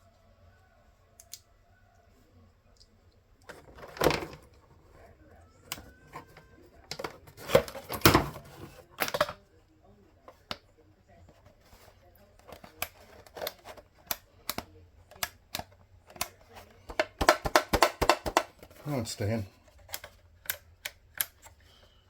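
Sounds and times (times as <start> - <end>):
plastic parts clicking and knocking: 2.8 - 9.5, 11.3 - 18.9, 19.6 - 21.7.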